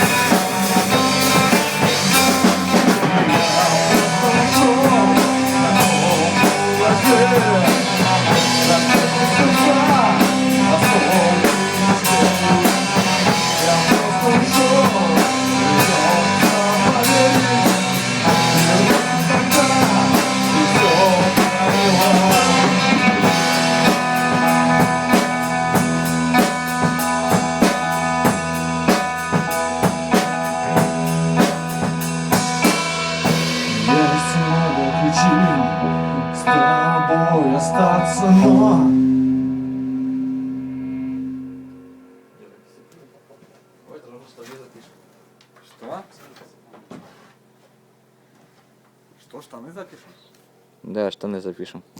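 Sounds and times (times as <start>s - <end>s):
rock music: 0.0s - 42.4s.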